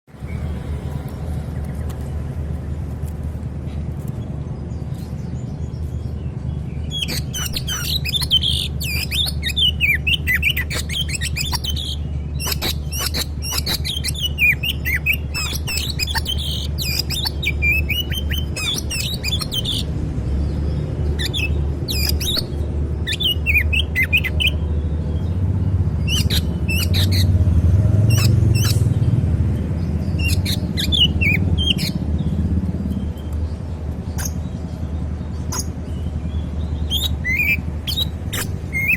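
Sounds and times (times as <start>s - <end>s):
steady low rumble: 0.2s - 38.9s
bird whistles and chirps: 6.9s - 19.9s, 21.2s - 24.6s, 26.0s - 27.4s, 28.1s - 28.9s, 30.1s - 32.0s, 36.8s - 38.9s.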